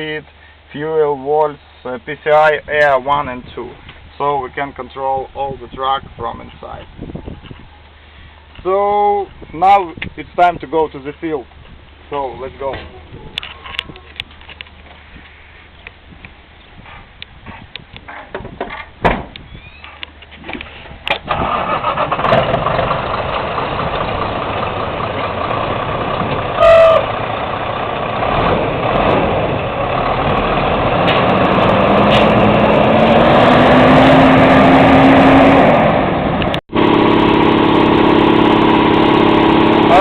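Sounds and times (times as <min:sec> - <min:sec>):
truck engine starting and running: 0:17.7 - 0:40.0
steady engine hum: 0:20.0 - 0:40.0
rising engine whine: 0:21.4 - 0:40.0.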